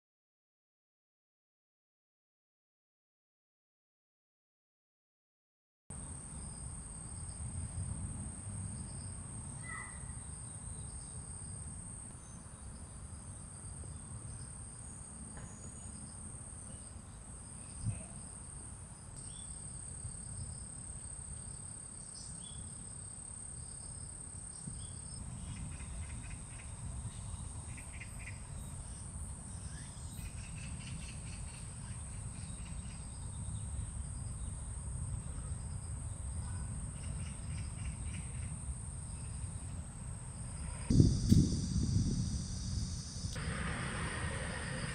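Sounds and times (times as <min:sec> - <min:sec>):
insects trilling: 0:06.0 - 0:44.9
bird chirps: 0:09.6 - 0:11.2.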